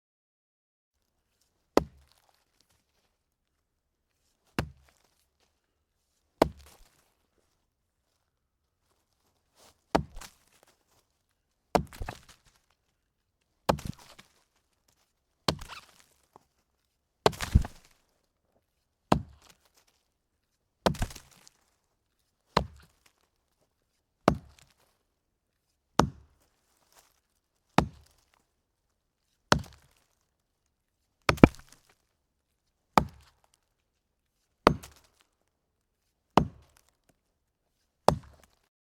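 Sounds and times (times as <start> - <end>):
axe chopping wood: 1.8 - 2.2, 4.6 - 4.9, 6.4 - 7.0, 10.0 - 10.4, 11.8 - 12.4, 13.7 - 14.3, 15.5 - 16.0, 17.2 - 17.9, 19.1 - 19.6, 20.8 - 21.5, 22.6 - 22.9, 24.3 - 24.7, 26.0 - 26.3, 27.8 - 28.2, 29.5 - 30.0, 31.3 - 31.8, 33.0 - 33.4, 34.6 - 35.2, 36.4 - 36.9, 38.1 - 38.6.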